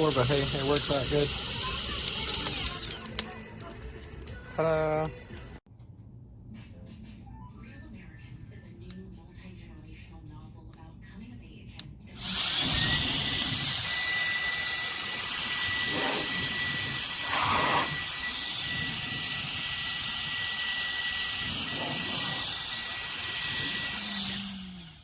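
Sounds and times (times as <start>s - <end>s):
electric air duster blowing: 0.0s - 3.4s, 12.2s - 25.0s.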